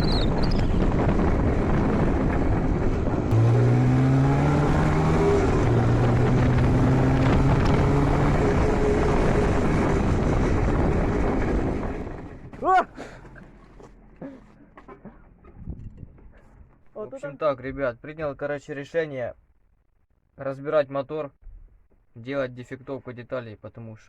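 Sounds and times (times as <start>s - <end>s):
motorcycle engine running: 0.0s - 12.6s
wind on microphone: 0.0s - 12.6s, 15.5s - 16.3s.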